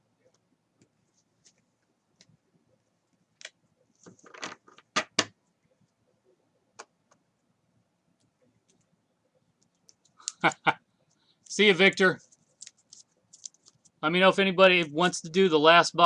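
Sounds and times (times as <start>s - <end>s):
trading cards rustling and clicking: 11.8s - 14.0s.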